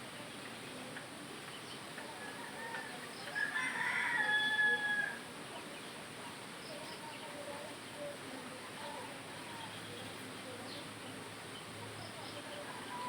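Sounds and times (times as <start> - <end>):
rooster crowing: 2.2 - 5.2.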